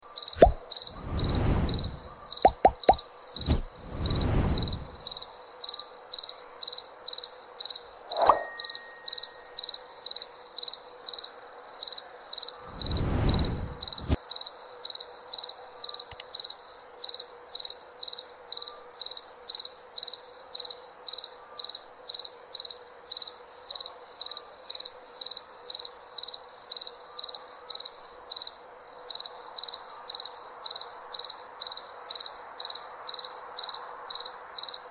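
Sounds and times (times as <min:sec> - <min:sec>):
low rumbles: 0:00.4 - 0:05.1, 0:12.7 - 0:14.2.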